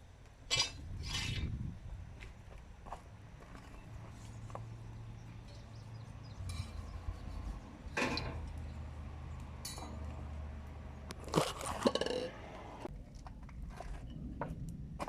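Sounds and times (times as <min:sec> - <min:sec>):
steady low hum: 0:00.0 - 0:15.0
metal tools clinking: 0:09.6 - 0:10.1.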